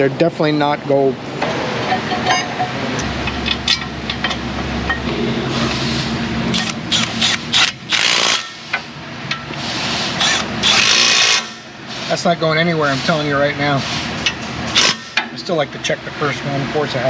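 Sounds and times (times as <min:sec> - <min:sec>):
tools knocking against metal: 0:01.4 - 0:05.1.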